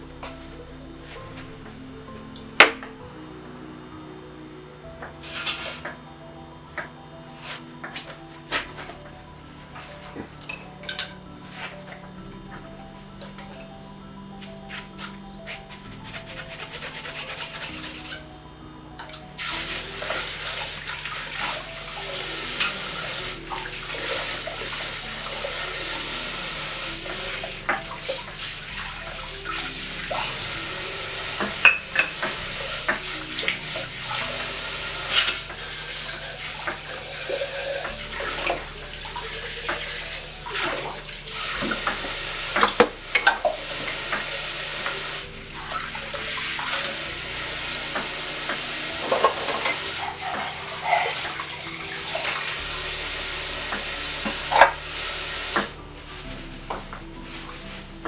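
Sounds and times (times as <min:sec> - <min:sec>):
pots and pans clattering: 0:10.0 - 0:11.8, 0:19.0 - 0:57.8
tap water running into sink: 0:19.1 - 0:55.8.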